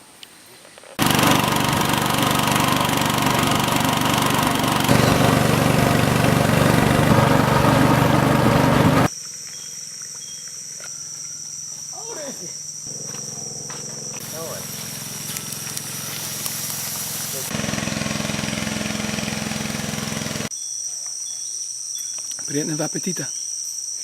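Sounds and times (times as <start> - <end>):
small boat engine running: 1.0 - 9.1, 12.9 - 20.5
high-pitched insect drone: 9.1 - 17.5.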